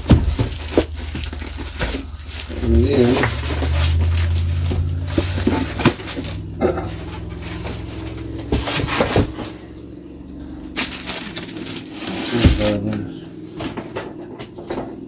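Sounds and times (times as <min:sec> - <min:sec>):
meat grinder parts knocking: 0:00.0 - 0:09.6
low hum: 0:00.0 - 0:12.3
packaging handled: 0:10.8 - 0:12.9.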